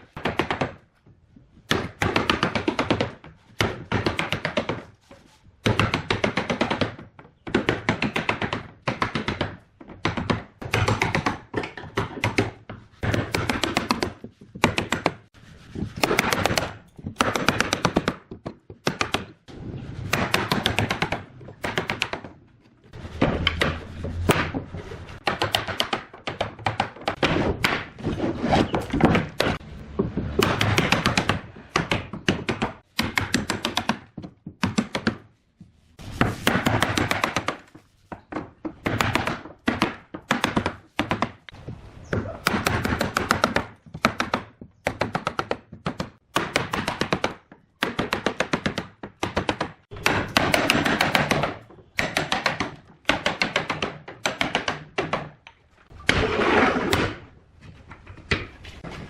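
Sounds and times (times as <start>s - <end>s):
hand tools tapping wood: 0.2s - 15.3s, 16.0s - 19.4s.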